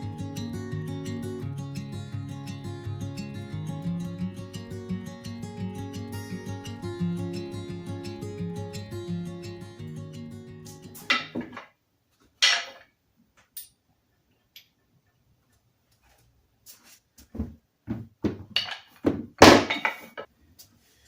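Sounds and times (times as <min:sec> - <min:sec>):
guitar music: 0:00.0 - 0:11.3.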